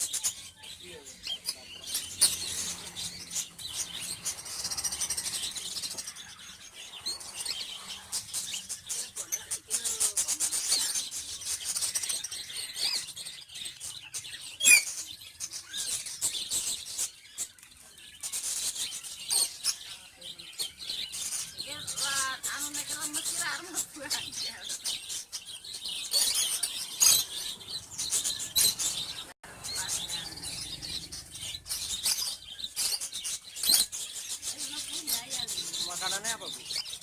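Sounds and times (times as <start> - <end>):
cockatiel chicks begging calls: 0.0 - 37.0.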